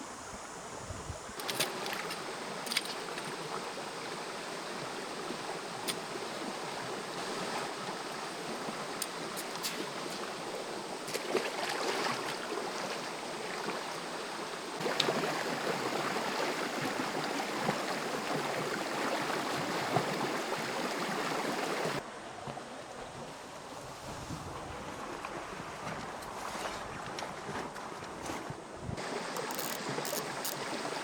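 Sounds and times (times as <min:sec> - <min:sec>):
small clicks: 0:01.4 - 0:03.3, 0:29.3 - 0:30.6
stream water rushing: 0:01.4 - 0:22.0, 0:29.0 - 0:31.0.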